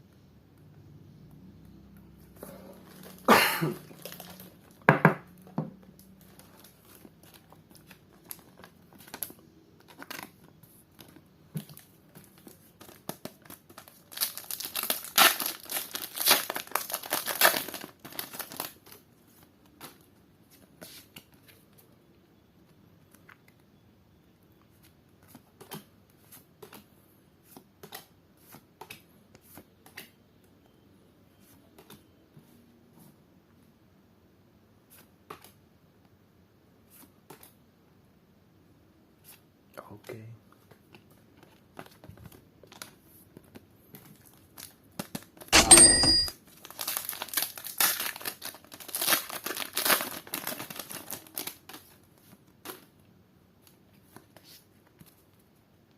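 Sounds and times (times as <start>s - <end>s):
wrapper crinkling: 2.8s - 4.8s, 6.2s - 19.0s, 46.5s - 52.9s
wrapper tearing: 2.8s - 4.8s, 12.8s - 18.9s, 46.5s - 52.0s.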